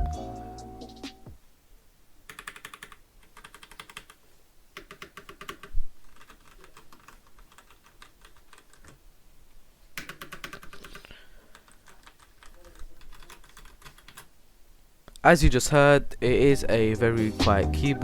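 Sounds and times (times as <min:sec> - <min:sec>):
mechanical keyboard typing: 0:02.3 - 0:04.2, 0:04.8 - 0:09.0, 0:10.0 - 0:14.3.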